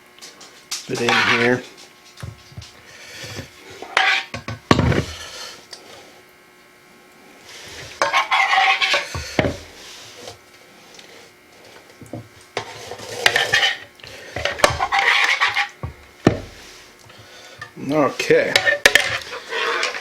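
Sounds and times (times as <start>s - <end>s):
metal utensil scraping dishes: 0.9s - 1.7s, 3.3s - 5.5s, 8.0s - 9.6s, 12.6s - 16.4s, 17.5s - 20.0s.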